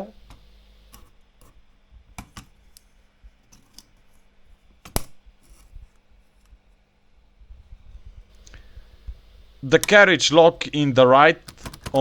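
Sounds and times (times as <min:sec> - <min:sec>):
sharp snap: 0:04.9 - 0:05.2
typewriter parts clicking: 0:11.4 - 0:12.0.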